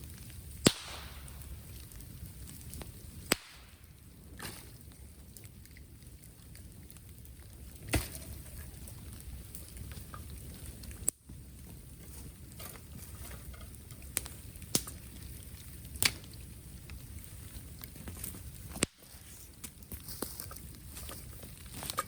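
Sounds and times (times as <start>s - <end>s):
bonfire crackling: 0.0s - 22.0s
bamboo popping and snapping: 0.2s - 4.8s, 14.0s - 15.1s, 15.9s - 16.4s, 17.8s - 22.0s.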